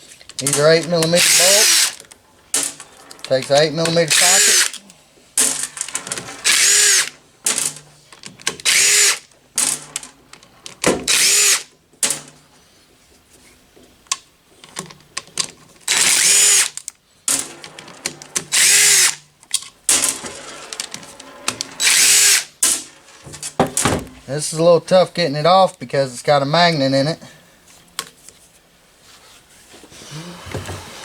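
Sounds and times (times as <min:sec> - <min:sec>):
power drill whining: 0:01.0 - 0:02.0, 0:03.8 - 0:04.8, 0:06.4 - 0:07.2, 0:08.6 - 0:09.2, 0:11.1 - 0:11.6, 0:15.9 - 0:16.8, 0:18.5 - 0:19.2, 0:21.8 - 0:22.5
clicks and knocks of parts handled: 0:07.4 - 0:08.7, 0:13.8 - 0:18.8, 0:19.4 - 0:21.8.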